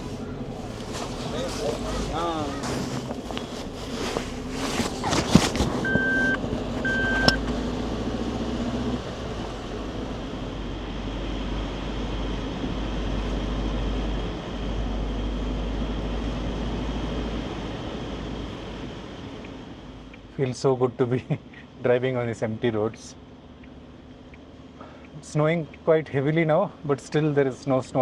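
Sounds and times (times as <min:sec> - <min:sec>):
engine and road noise rumble: 0:00.0 - 0:28.0
short electronic beeps: 0:05.8 - 0:07.4.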